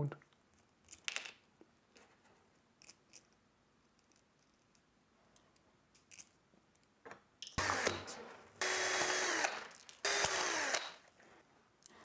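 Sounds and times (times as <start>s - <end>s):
small metal parts clicking: 2.8s - 7.6s
loud motor-like sound: 7.6s - 11.0s.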